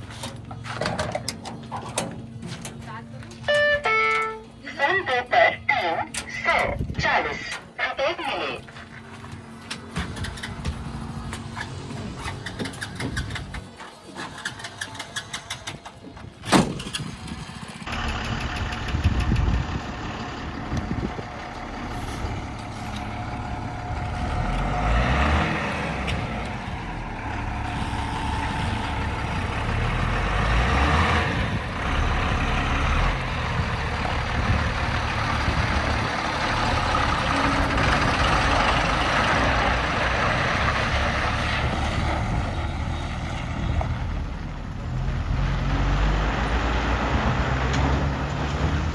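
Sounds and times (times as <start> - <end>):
heavy diesel engine running hard: 17.1 - 48.9.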